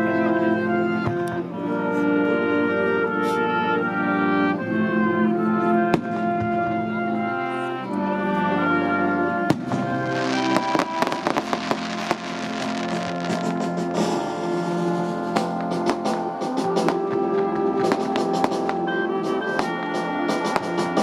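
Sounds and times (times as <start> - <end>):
brass band playing chords: 0.0 - 21.0
firework bangs: 9.5 - 14.3
crackling fireworks: 9.5 - 21.0.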